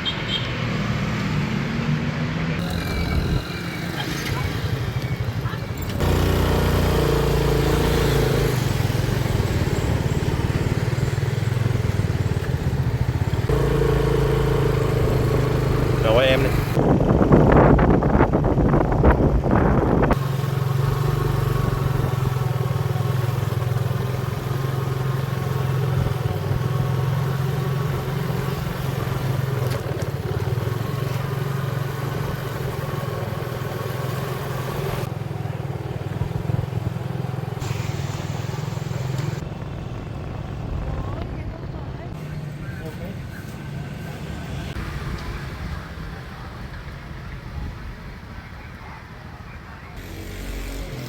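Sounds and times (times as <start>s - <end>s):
motorbike engine drone: 2.5s - 48.4s, 49.9s - 51.0s
wind on microphone: 16.4s - 20.2s.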